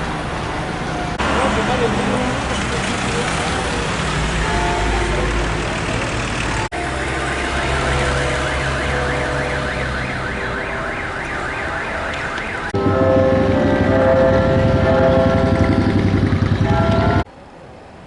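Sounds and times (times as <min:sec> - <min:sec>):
electronic siren warbling: 0:06.8 - 0:17.3
steady held tones: 0:12.6 - 0:17.3.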